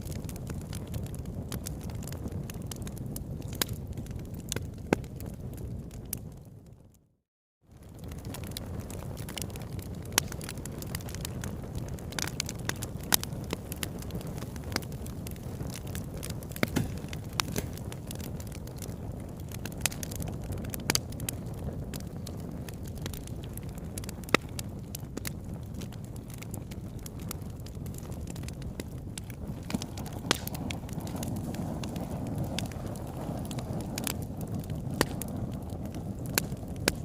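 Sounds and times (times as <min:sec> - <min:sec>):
campfire pops and crackles: 0:00.0 - 0:07.0, 0:07.7 - 0:37.0
low rushing fire noise: 0:07.8 - 0:37.0.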